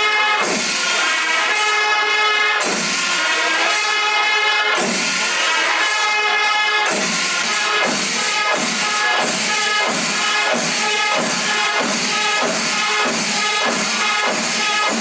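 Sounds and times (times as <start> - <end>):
drum strokes: 0.0 - 15.0
wind instruments playing held notes: 0.0 - 15.0
cymbal strokes: 6.8 - 15.0.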